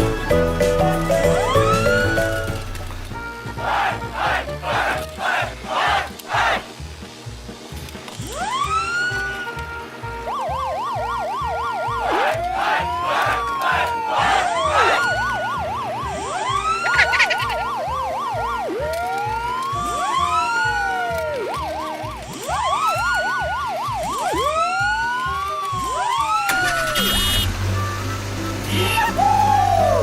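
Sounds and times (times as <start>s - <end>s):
sirens wailing: 0.0s - 3.0s, 8.2s - 30.0s
two-tone siren yelp: 1.2s - 2.5s, 8.3s - 30.0s.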